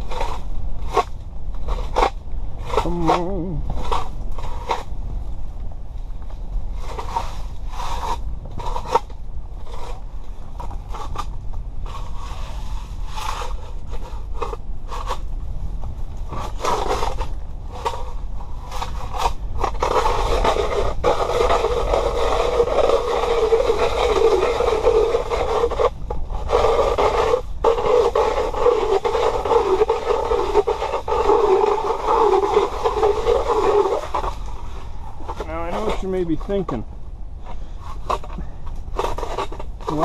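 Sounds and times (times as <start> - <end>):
ice auger grinding ice: 0.0 - 4.9, 18.7 - 36.8, 37.5 - 40.0
wind rumble on microphone: 0.0 - 40.0.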